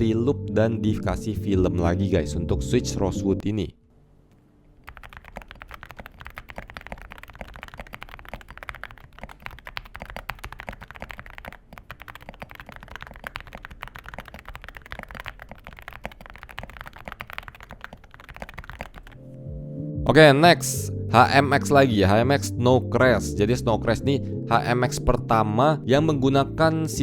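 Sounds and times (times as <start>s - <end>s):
fast mechanical keyboard typing: 4.8s - 19.2s.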